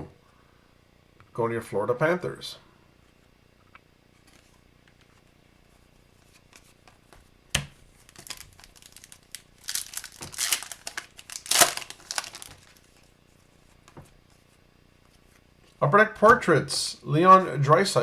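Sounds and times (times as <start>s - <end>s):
foil wrapper crinkling: 8.0s - 13.1s
foil wrapper tearing: 8.0s - 13.1s.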